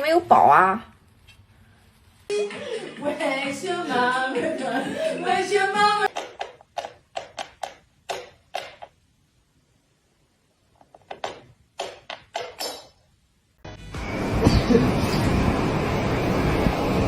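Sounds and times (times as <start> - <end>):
steady rushing noise: 13.7 - 17.0.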